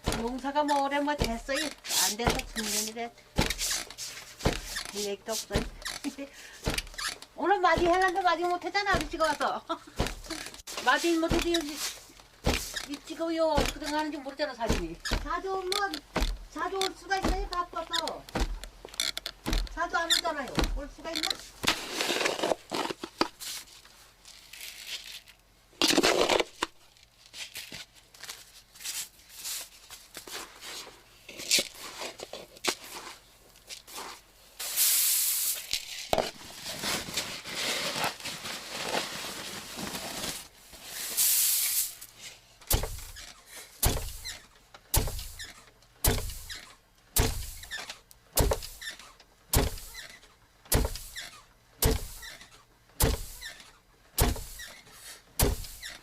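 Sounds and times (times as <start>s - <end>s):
pestle thudding into mortar: 0.0s - 0.4s, 1.2s - 3.8s, 4.4s - 4.9s, 7.7s - 10.6s, 11.2s - 11.7s, 12.4s - 12.9s, 13.5s - 18.8s, 19.4s - 21.8s, 42.7s - 46.6s, 47.2s - 47.8s, 48.4s - 48.8s, 49.5s - 50.1s, 50.7s - 52.4s, 53.0s - 53.6s, 54.2s - 54.7s, 55.4s - 56.0s
wooden beam creaking and squealing: 5.6s - 10.6s, 12.5s - 22.6s, 42.8s - 45.7s, 46.3s - 46.8s, 48.7s - 52.6s, 53.3s - 53.8s, 54.4s - 55.0s, 55.7s - 56.0s.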